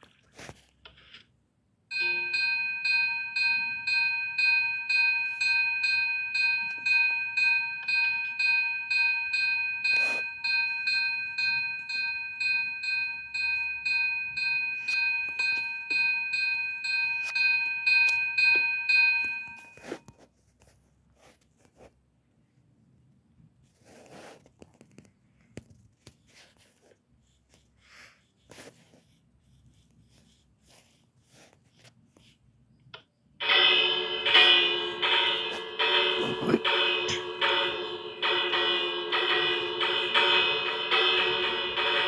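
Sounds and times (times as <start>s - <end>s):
fire alarm bell ringing: 1.9s - 20.1s, 33.4s - 42.0s.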